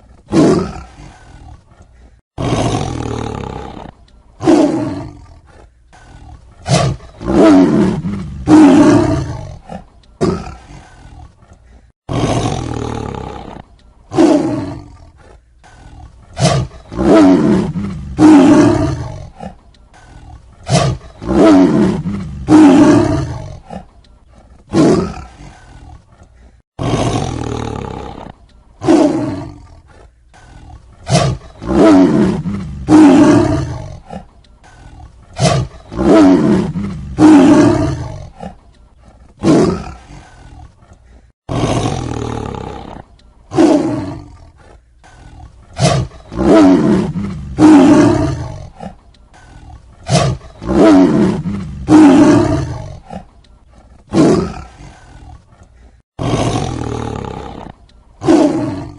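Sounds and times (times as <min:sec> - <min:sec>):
tiger roaring and snarling: 0:00.0 - 0:58.9.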